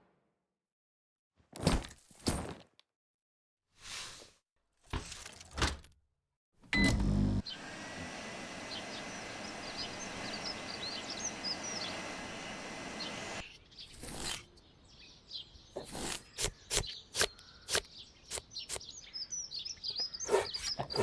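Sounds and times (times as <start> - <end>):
outdoor background noise: 6.7 - 21.0
birds chirping: 6.8 - 21.0.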